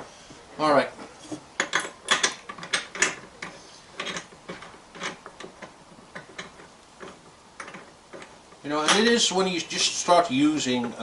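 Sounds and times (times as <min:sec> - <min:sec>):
lathe chuck metal clicks: 0:01.6 - 0:09.2.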